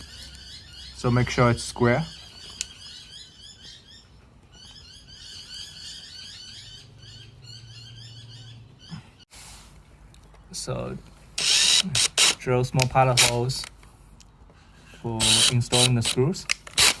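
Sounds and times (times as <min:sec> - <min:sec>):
small bird chirping: 0:00.0 - 0:09.3.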